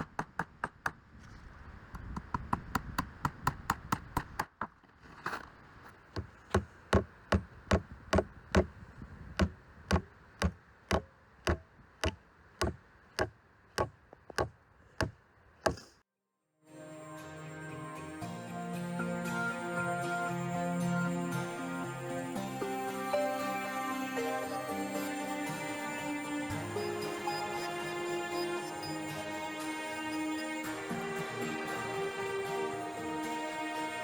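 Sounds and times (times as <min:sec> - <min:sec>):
hammer driving nails into wood: 0:06.2 - 0:08.7, 0:09.4 - 0:16.0.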